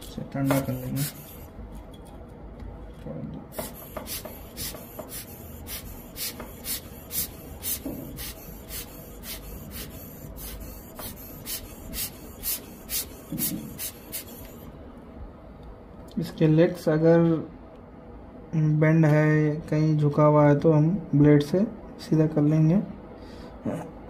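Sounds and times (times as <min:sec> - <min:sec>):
scratchy rubbing on circuit board: 0:00.4 - 0:01.5, 0:03.6 - 0:14.5.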